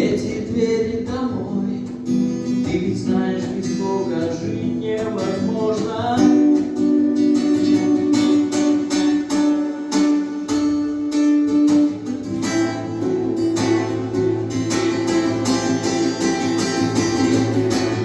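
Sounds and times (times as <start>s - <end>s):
acoustic guitar strumming chords: 0.0s - 18.0s.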